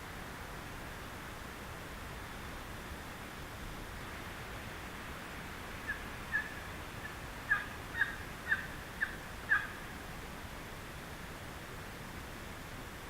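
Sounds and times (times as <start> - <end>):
turkey calling: 5.8 - 9.8.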